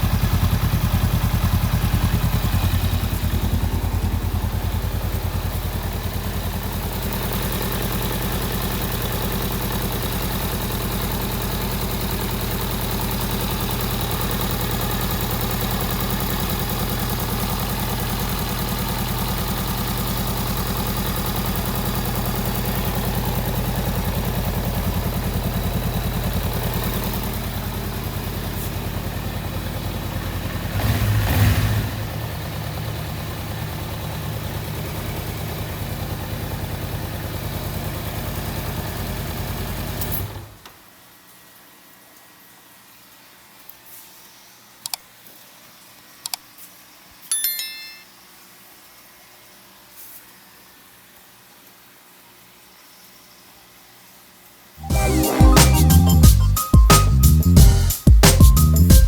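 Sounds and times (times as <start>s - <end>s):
motorcycle engine idling: 0.0s - 40.0s.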